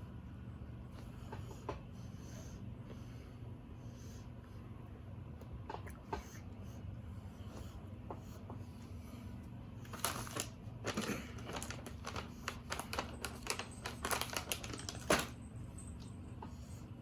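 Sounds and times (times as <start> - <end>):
plastic packaging crinkling: 9.9 - 15.4.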